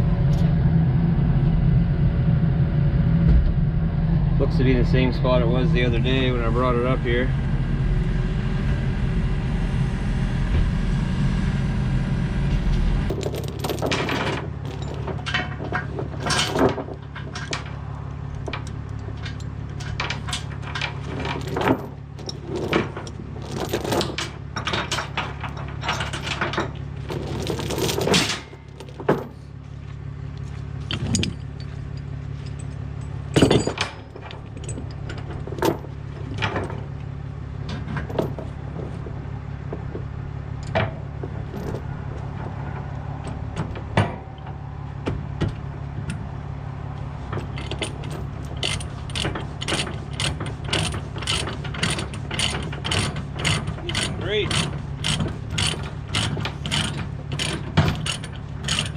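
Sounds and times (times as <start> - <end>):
diesel engine running: 0.0 - 58.9
engine idling hum: 0.0 - 58.9
metal chains clanking: 13.1 - 29.4, 30.8 - 36.9, 41.4 - 42.5, 47.3 - 58.9.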